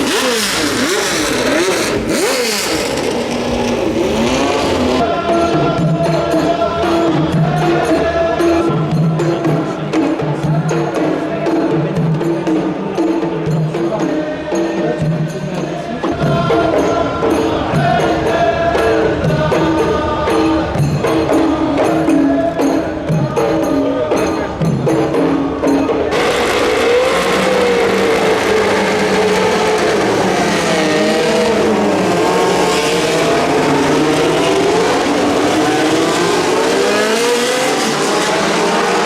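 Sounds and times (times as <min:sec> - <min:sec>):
race car engine at high revs: 0:00.0 - 0:05.1, 0:26.1 - 0:39.0.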